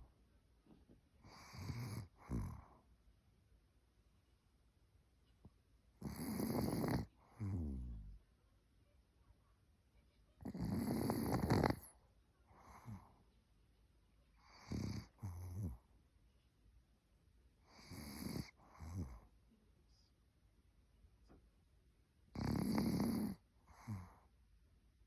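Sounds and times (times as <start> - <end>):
dog snoring: 1.2 - 2.8, 6.0 - 8.2, 10.4 - 12.0, 12.6 - 13.1, 14.4 - 15.8, 17.6 - 19.3, 22.3 - 24.3.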